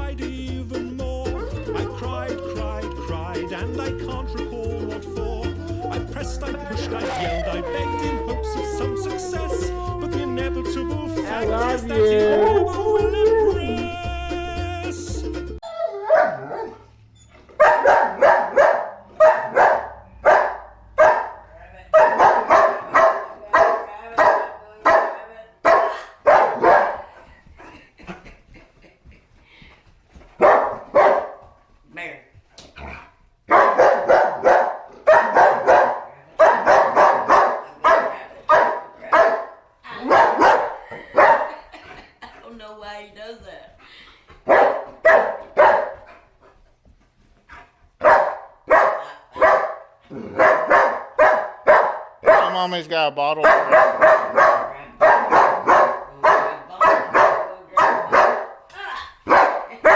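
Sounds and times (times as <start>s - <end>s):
dog barking: 15.8s - 16.9s, 17.6s - 27.2s, 30.4s - 31.6s, 33.5s - 41.7s, 44.4s - 46.2s, 48.0s - 52.6s, 53.4s - 59.9s.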